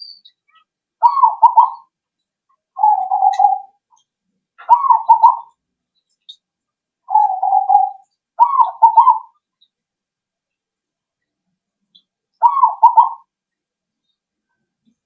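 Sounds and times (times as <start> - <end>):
dove cooing: 1.0 - 1.9, 2.8 - 3.8, 4.6 - 5.5, 7.1 - 9.4, 12.4 - 13.3.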